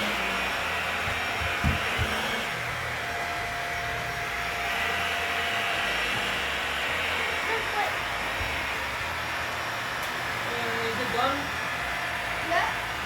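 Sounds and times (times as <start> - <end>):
vacuum cleaner on carpet: 0.0 - 13.0
dull knocks: 1.0 - 2.4.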